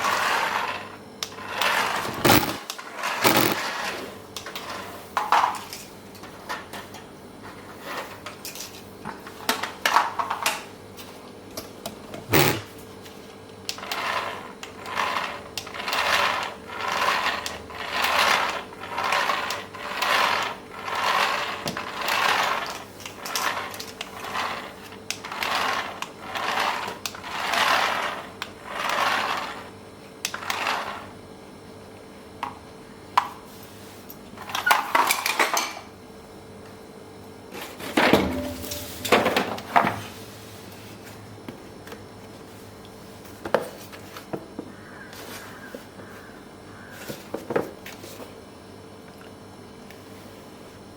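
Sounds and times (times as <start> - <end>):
small motor whirring: 1.4 - 2.6, 3.2 - 3.8, 12.3 - 12.6.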